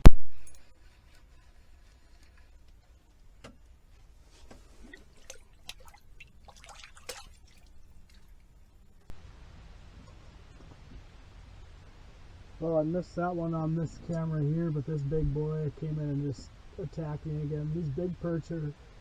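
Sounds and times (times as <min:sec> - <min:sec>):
water dripping and trickling: 0:04.2 - 0:09.2.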